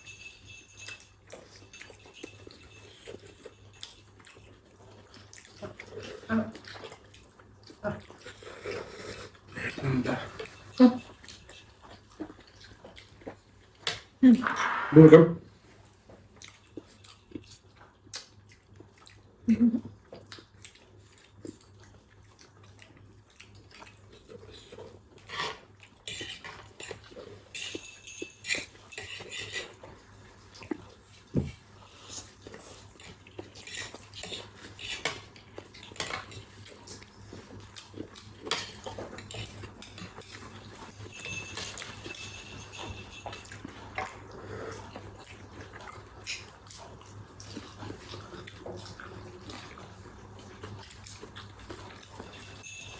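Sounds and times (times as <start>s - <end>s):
brief vocal sound: 14.2s - 15.4s
cutlery clinking on plates: 25.3s - 29.9s, 33.0s - 37.0s, 38.2s - 44.2s.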